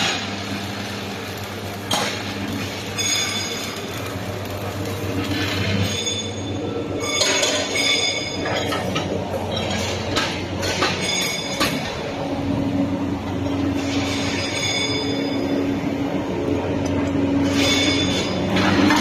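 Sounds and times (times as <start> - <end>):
welding machine low hum: 0.0 - 19.0
high-pitched metallic squeals: 5.3 - 8.7.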